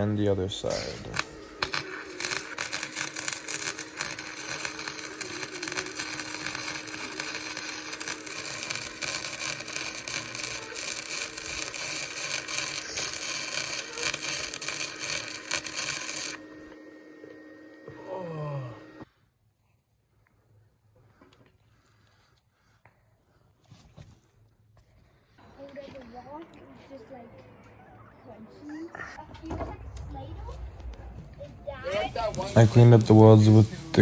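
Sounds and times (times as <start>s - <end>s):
welding arc crackling: 0.6s - 16.8s, 31.8s - 34.0s
low hum: 26.6s - 34.0s.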